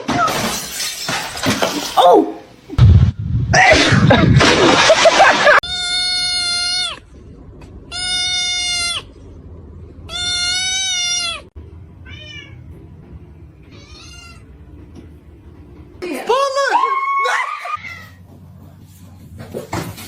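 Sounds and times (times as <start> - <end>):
cat meowing: 5.6 - 7.0, 7.9 - 9.1, 10.1 - 12.6, 13.7 - 14.5.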